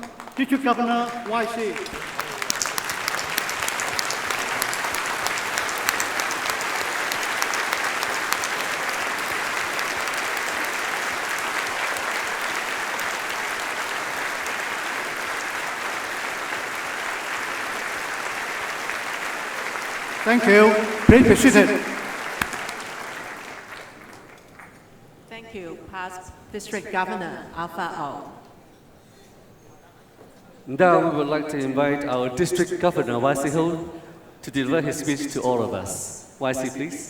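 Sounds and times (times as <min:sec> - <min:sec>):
large audience applauding: 0:00.0 - 0:24.8.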